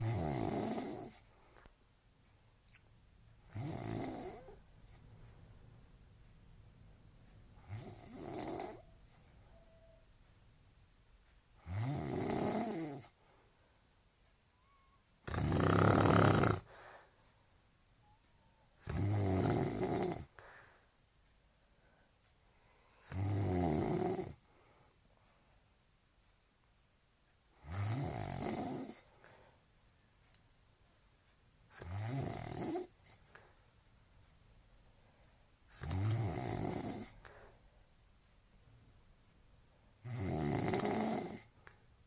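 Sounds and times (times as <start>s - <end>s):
person snoring: 0.0s - 1.2s, 3.5s - 4.6s, 7.6s - 8.8s, 15.2s - 16.9s, 18.8s - 20.3s, 23.1s - 24.4s, 31.8s - 33.0s, 35.8s - 37.3s, 40.0s - 41.5s.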